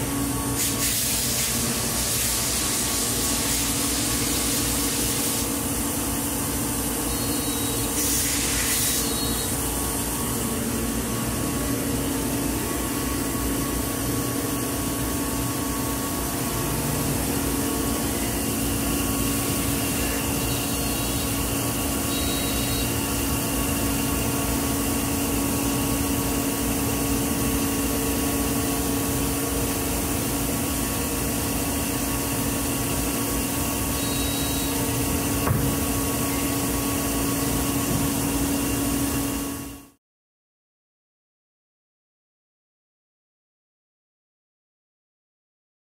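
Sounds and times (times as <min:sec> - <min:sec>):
router machine hum: 0:14.8 - 0:39.7.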